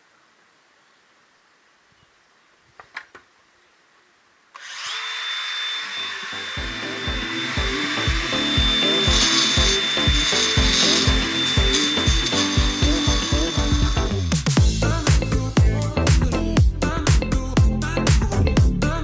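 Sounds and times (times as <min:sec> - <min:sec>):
power tool whining: 0:04.6 - 0:14.2
background music with beat: 0:06.6 - 0:19.0.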